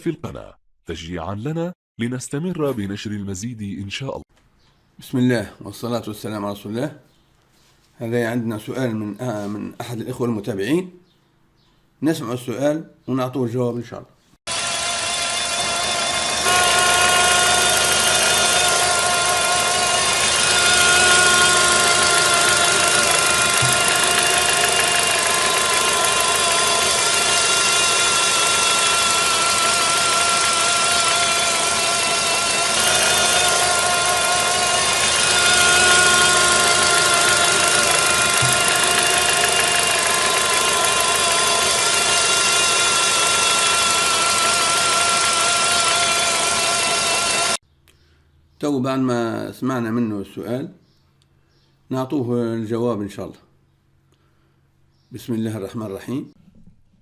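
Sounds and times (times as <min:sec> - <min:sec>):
car engine running: 0:14.5 - 0:47.6
transmission whine: 0:14.5 - 0:47.6.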